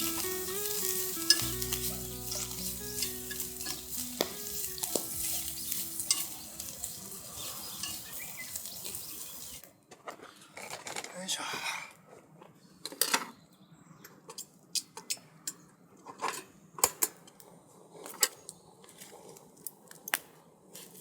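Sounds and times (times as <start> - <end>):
utensil clicking against pan: 0.0 - 9.1
food sizzling in a frying pan: 0.0 - 9.6.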